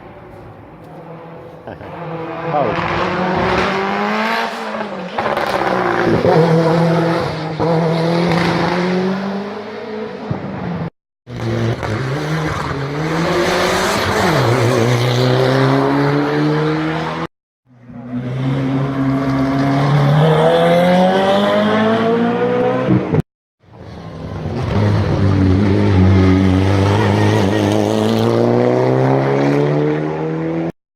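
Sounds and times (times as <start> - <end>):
race car engines accelerating: 0.8 - 30.7.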